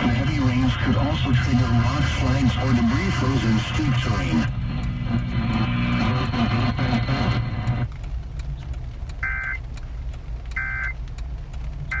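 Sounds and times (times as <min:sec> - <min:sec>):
radio audio: 0:00.0 - 0:07.9
low steady rumble: 0:00.0 - 0:12.0
car warning chime: 0:09.2 - 0:09.6, 0:10.6 - 0:11.0.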